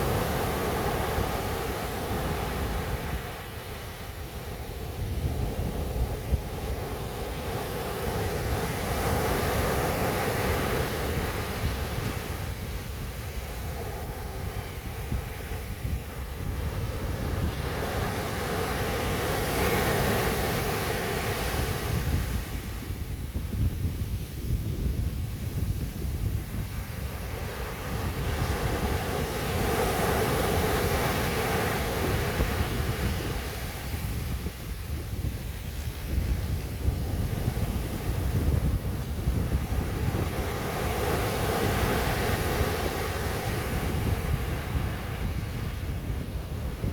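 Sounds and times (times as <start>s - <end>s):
wave washing on beach: 0.0s - 46.9s
wind rumble on microphone: 0.0s - 46.9s
wind thump on microphone: 8.4s - 13.6s, 21.6s - 46.9s.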